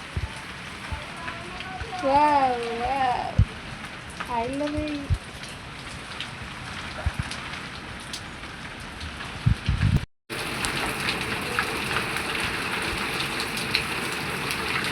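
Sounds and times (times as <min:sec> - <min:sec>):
hail pattering: 0:00.0 - 0:09.4, 0:10.3 - 0:14.9
heavy rain pouring: 0:00.0 - 0:14.9.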